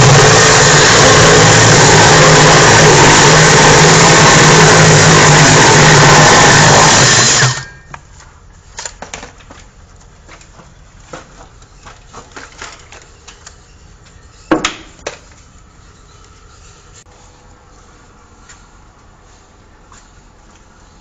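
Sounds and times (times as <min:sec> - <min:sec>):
loud power tool: 0:00.0 - 0:07.9.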